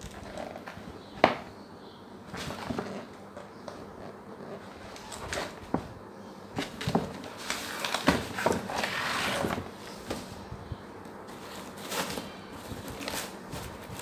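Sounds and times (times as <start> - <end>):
packaging rustling and scraping: 6.6 - 10.4, 11.2 - 14.0.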